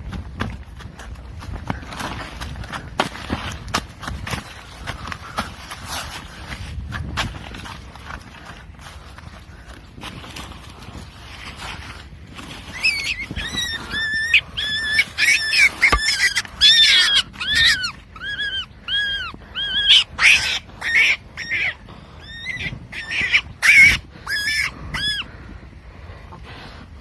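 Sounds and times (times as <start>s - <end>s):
high-pitched animal squeaks: 12.5s - 25.3s.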